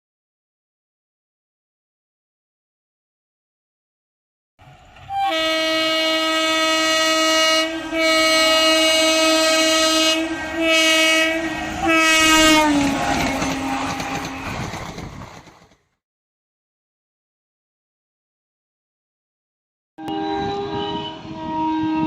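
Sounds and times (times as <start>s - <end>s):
train rumbling past: 4.6s - 16.0s, 20.0s - 22.0s
locomotive horn two-note chord: 5.0s - 12.8s, 20.0s - 22.0s.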